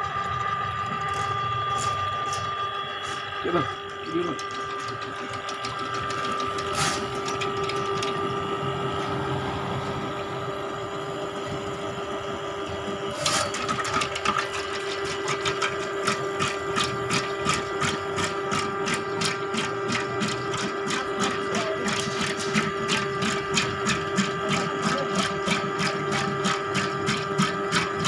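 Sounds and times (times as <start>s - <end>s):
drain-cleaning machine motor hum: 0.0s - 28.0s
cable rattling in pipe: 13.2s - 28.0s.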